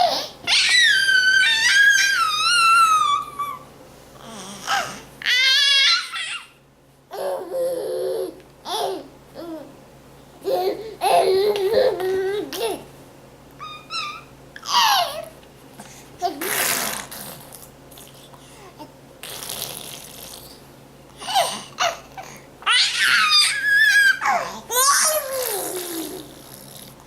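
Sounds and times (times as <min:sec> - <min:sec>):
baby babbling and squealing: 0:00.0 - 0:03.6, 0:13.6 - 0:15.3, 0:22.7 - 0:26.3.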